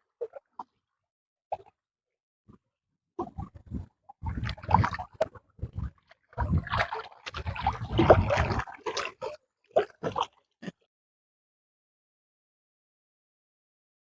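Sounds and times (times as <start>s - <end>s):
water splashing and sloshing: 0.1s - 0.8s, 3.2s - 10.4s.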